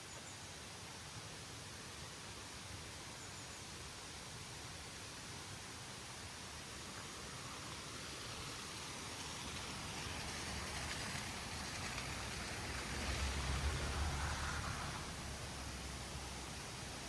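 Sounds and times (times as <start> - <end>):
flowing water rushing: 0.6 - 17.0.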